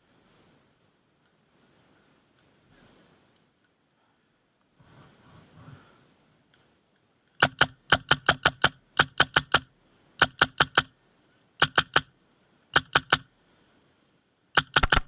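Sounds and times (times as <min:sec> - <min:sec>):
airsoft rifle shots: 0:07.4 - 0:09.6, 0:14.6 - 0:15.0.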